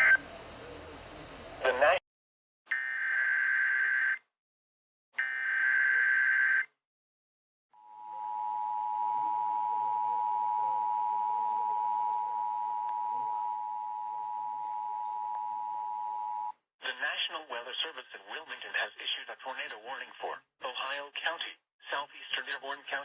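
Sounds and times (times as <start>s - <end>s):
two-tone attention signal: 0.0s - 0.2s
buzzy digital header bursts: 0.0s - 2.0s.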